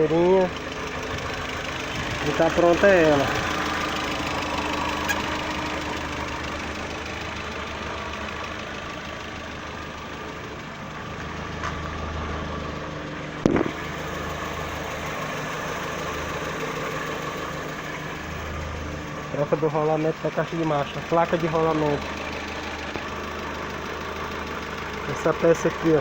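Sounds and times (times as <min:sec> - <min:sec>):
car engine idling: 0:00.0 - 0:26.0
short knock: 0:13.4 - 0:13.8.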